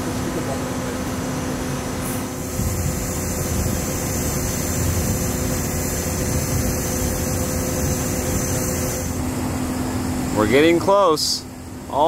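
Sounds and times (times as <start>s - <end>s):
lift motor humming: 0.0s - 12.0s.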